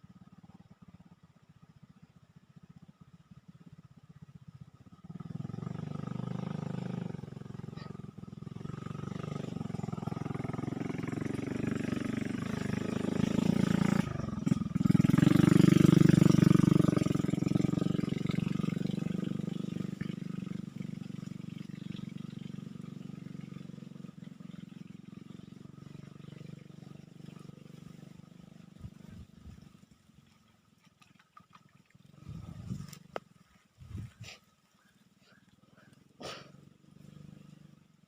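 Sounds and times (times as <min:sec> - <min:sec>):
passing vehicle engine: 0:03.6 - 0:30.4, 0:35.2 - 0:38.0.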